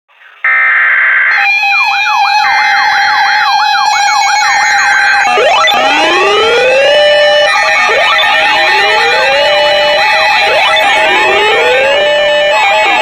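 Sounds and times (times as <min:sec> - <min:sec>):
electronic siren yelp: 0:00.3 - 0:13.0
siren wail: 0:00.3 - 0:13.0
steady alert tones: 0:04.0 - 0:13.0.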